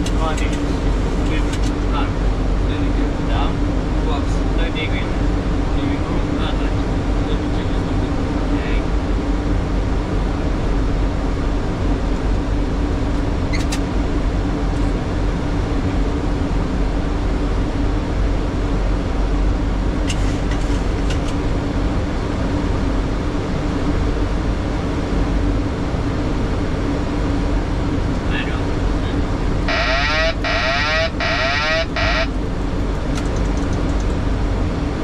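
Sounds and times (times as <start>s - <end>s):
engine and air-system drone: 0.0s - 35.0s.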